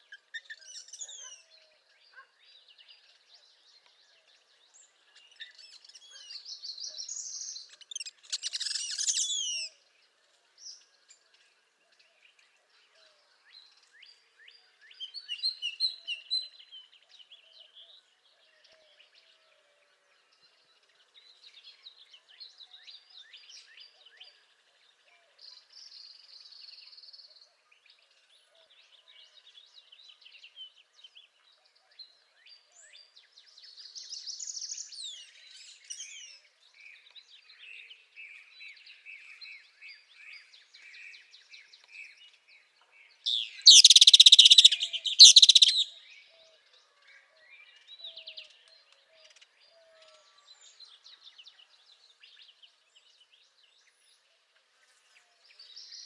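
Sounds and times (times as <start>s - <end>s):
bird singing trilled song: 0.0s - 9.8s, 13.5s - 18.0s, 32.0s - 54.2s
other birds chirping: 4.9s - 9.7s, 43.3s - 46.5s.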